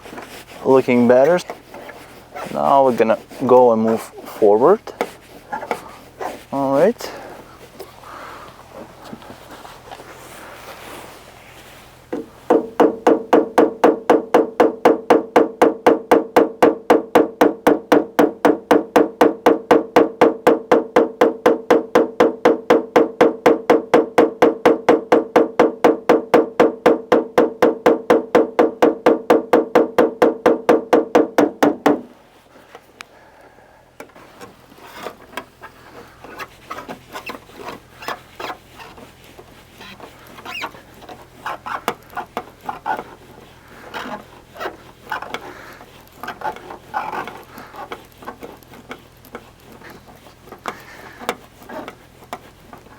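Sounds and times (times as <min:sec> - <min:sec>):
hammer tapping steel panel: 0:12.1 - 0:32.2, 0:34.0 - 0:52.9.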